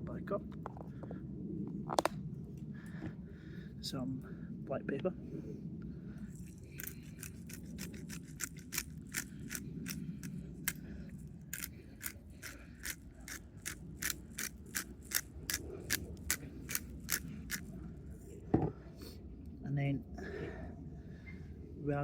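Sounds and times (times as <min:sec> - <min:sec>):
pepper mill grinding clicks: 0:06.4 - 0:10.8, 0:11.5 - 0:17.7.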